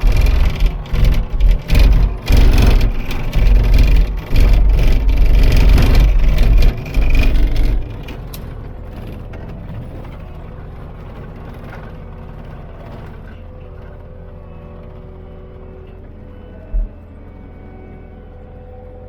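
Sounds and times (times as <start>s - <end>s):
loud burst of noise: 0.0s - 8.1s
diesel engine running: 0.0s - 19.0s.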